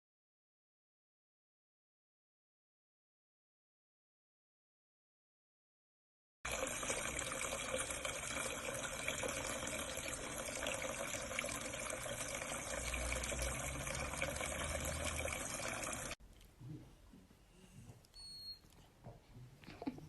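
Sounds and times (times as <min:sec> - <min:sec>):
running water rushing: 0:06.5 - 0:16.2.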